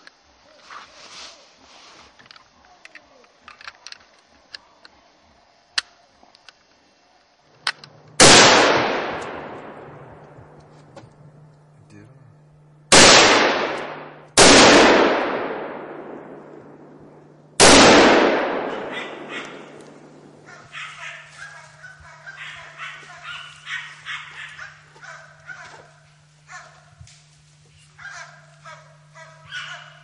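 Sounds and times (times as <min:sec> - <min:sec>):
echoing gunshots: 0:08.2 - 0:10.6, 0:12.9 - 0:20.5
dogs barking: 0:18.7 - 0:27.0, 0:28.0 - 0:30.0.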